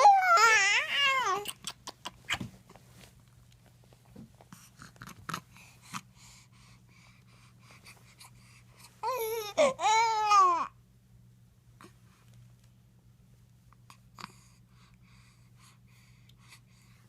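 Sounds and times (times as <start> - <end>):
baby girl crying: 0.0 - 1.5, 9.0 - 10.7.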